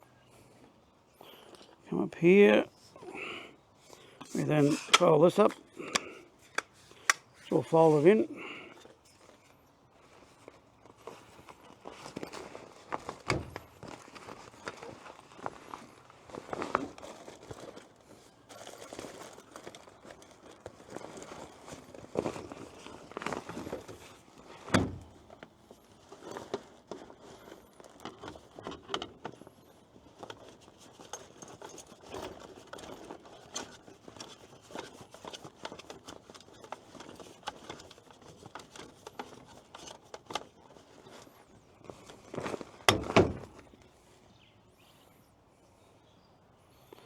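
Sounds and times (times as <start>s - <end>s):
tripod light handling clicks and rattles: 4.2s - 7.5s.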